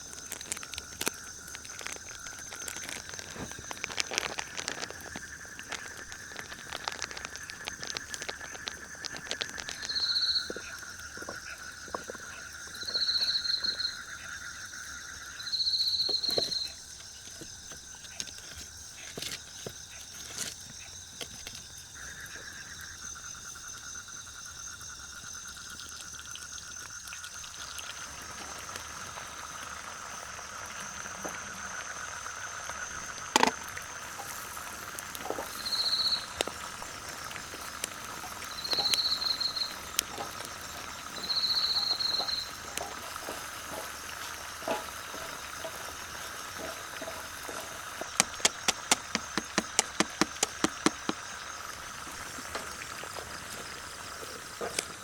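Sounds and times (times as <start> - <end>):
frogs and insects trilling: 0.0 - 55.0
sharp clicks: 48.1 - 51.3.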